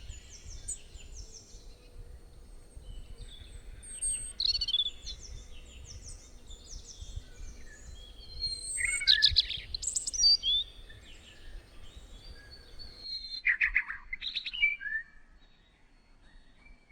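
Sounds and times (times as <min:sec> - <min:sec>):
birds singing and chirping: 0:00.0 - 0:13.2.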